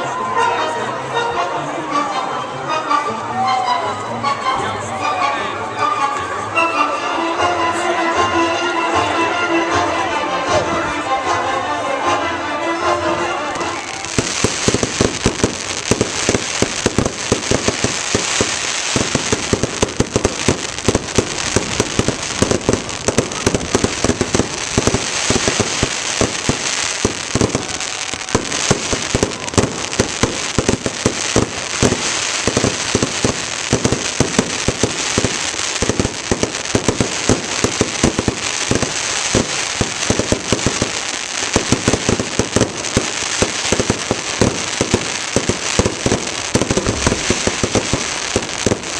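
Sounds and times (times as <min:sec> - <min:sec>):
fireworks crackling: 0:13.4 - 0:48.9.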